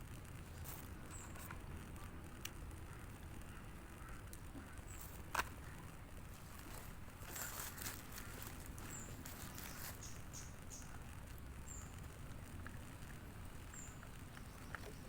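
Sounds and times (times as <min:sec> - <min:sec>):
low background rumble: 0:00.0 - 0:15.0
small bird chirping: 0:01.0 - 0:01.5, 0:07.3 - 0:15.0
faint rustles: 0:04.6 - 0:15.0.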